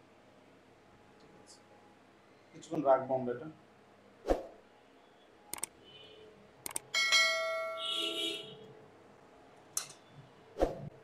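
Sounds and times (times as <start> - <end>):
sharp clicks: 5.5 - 5.7, 6.6 - 6.9.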